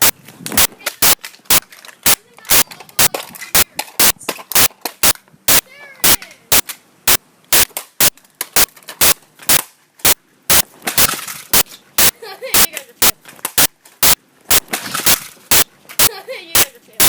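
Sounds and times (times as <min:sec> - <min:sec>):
toy car being smashed: 0:10.9 - 0:11.7, 0:14.7 - 0:15.4.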